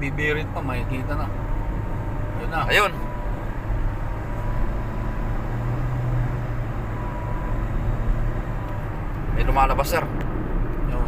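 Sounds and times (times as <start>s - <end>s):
car engine and road noise: 0.0s - 11.0s.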